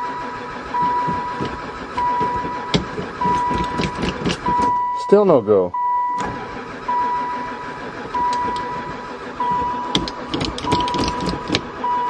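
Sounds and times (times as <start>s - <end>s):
low mechanical rumble: 0.0s - 5.0s, 5.7s - 12.0s
dashboard warning chime: 0.0s - 7.6s, 8.2s - 12.0s
sharp clicks: 9.9s - 11.7s.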